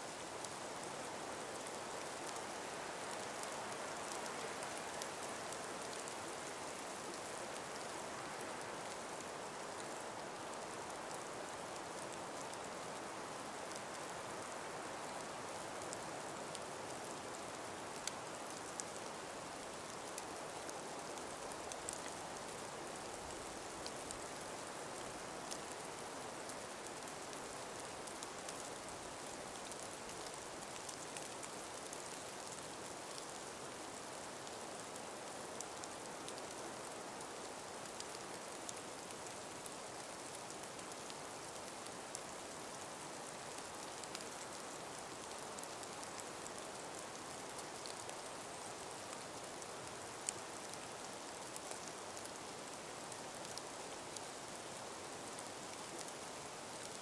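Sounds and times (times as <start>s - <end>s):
breeze through trees: 0.0s - 57.0s
small ticks: 23.0s - 27.3s, 27.9s - 33.5s, 34.4s - 52.4s.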